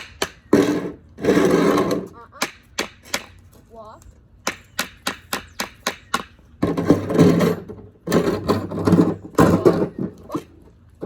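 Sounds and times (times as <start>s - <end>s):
hard object grinding along ground: 0.4s - 2.2s, 6.6s - 10.6s.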